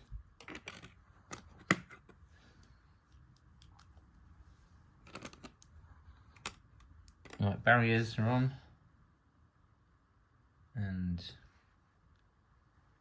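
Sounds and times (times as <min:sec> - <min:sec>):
plastic bricks clicking and rattling: 0:00.4 - 0:02.0, 0:05.0 - 0:05.7.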